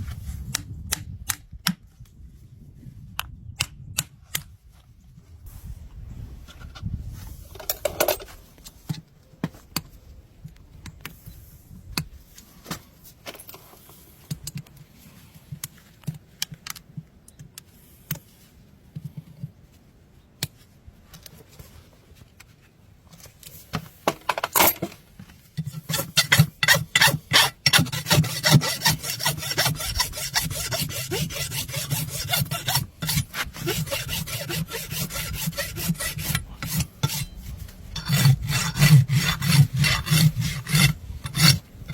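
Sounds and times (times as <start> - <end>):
tools scraping horse hoof: 25.6 - 41.9.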